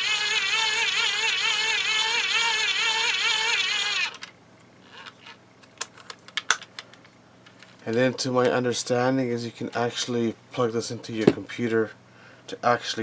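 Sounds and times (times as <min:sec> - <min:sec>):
hand-crank dynamo whine: 0:00.0 - 0:05.4.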